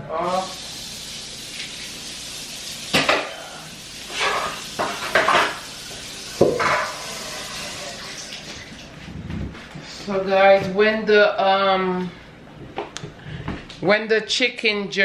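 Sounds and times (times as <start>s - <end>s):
kitchen tap running: 0.2s - 9.0s
dishes clattering in sink: 2.9s - 3.4s, 4.1s - 5.7s, 6.4s - 7.6s.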